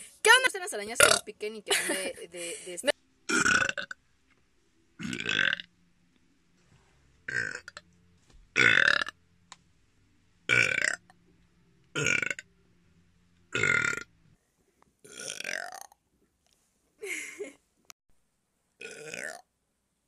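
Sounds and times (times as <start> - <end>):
woman burping: 1.0 - 3.8.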